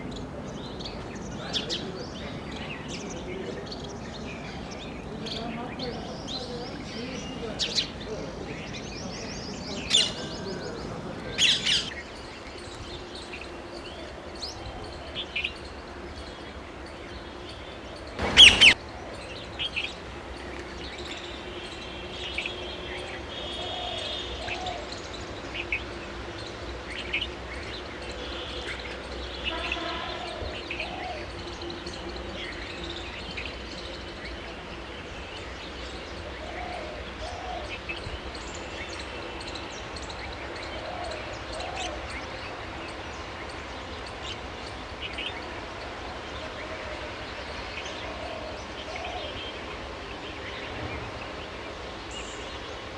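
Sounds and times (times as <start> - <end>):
parakeets shrill calls: 18.2 - 18.8
soft bird chirps: 18.2 - 18.8.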